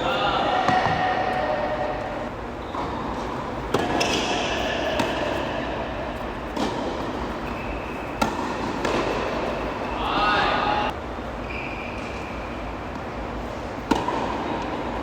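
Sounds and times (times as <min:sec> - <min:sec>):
tennis ball hit by rackets: 0:02.7 - 0:10.9, 0:13.8 - 0:14.4.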